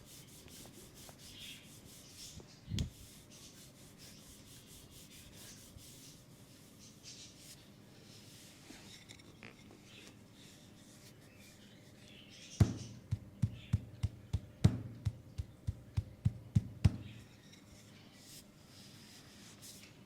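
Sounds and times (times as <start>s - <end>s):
hands thumping on leg: 12.6s - 17.1s.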